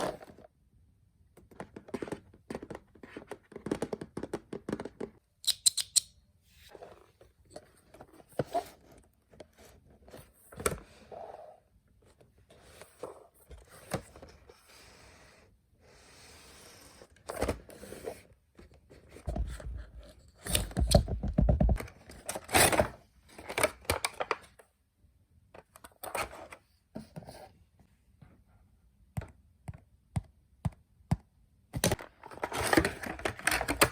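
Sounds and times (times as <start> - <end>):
toy packaging being opened: 31.9 - 33.9.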